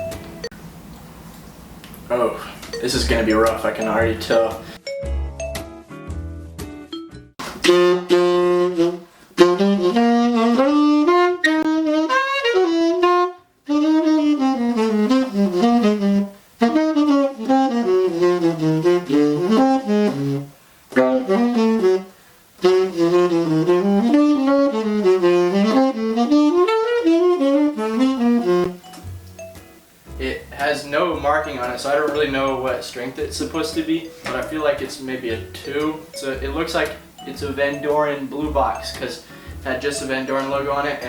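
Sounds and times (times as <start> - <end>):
tenor saxophone jazz phrases: 2.1 - 4.8, 7.4 - 28.9, 30.1 - 41.0
player's short breaths: 39.2 - 39.6.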